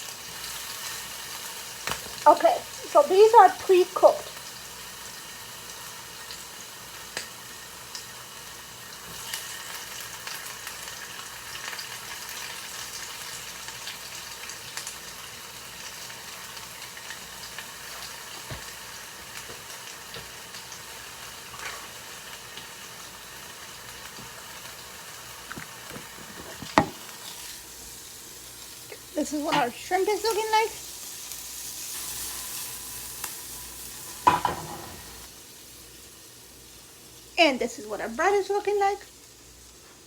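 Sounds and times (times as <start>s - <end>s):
shrimp sizzling in a frying pan: 0.0s - 40.0s
utensil knocking against pan: 25.6s - 27.0s.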